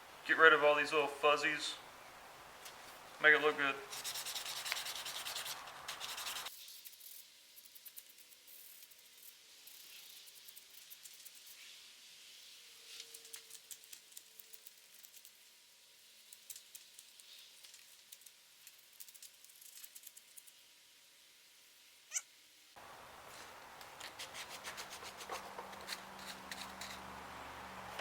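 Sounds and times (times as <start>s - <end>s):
sandpaper scratching: 3.9s - 11.7s, 23.3s - 27.1s.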